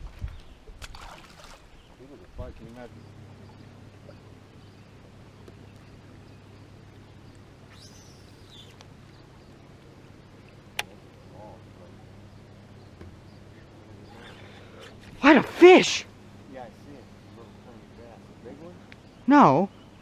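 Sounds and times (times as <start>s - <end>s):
faint low hum: 0.1s - 20.0s
bird call: 7.7s - 8.8s.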